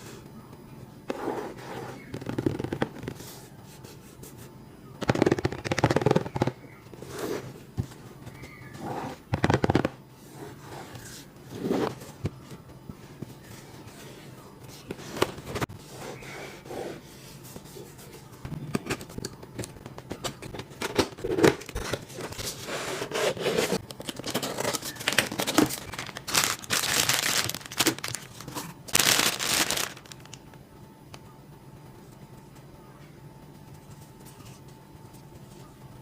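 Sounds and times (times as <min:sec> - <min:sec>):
packaging crinkling and rustling: 0:20.2 - 0:30.4
packaging tearing: 0:24.0 - 0:30.4.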